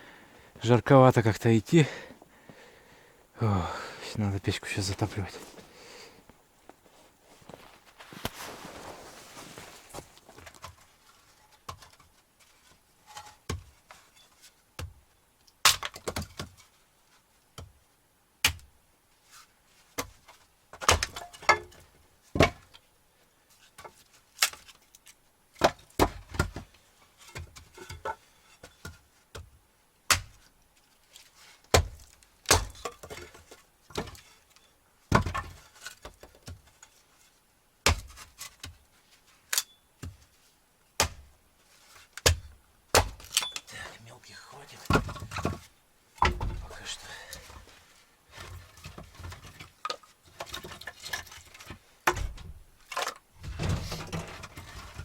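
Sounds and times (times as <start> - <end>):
firewood breaking and knocking: 46.2 - 46.7.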